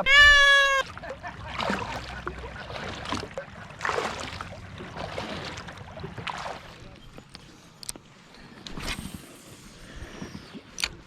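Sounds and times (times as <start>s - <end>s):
high-pitched call: 0.0s - 0.9s
paddle strokes swishing through water: 0.0s - 11.0s.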